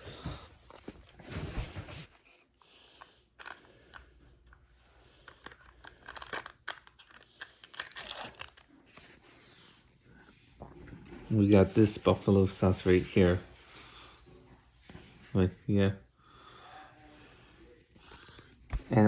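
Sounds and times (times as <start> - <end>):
paper and plastic rustling: 0.1 - 4.2, 5.1 - 9.4.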